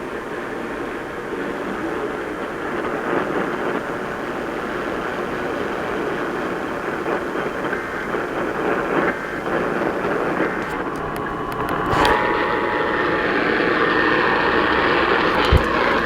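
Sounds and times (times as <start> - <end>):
radio static hiss: 8.7 - 16.0.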